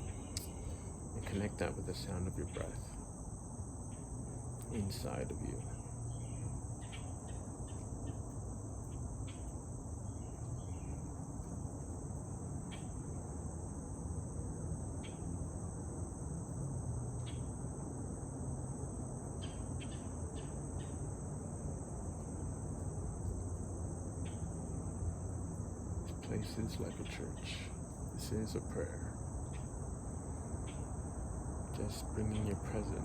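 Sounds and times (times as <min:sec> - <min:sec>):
highway traffic rumble: 0:00.0 - 0:08.8, 0:22.9 - 0:33.0
insects droning: 0:00.0 - 0:33.0.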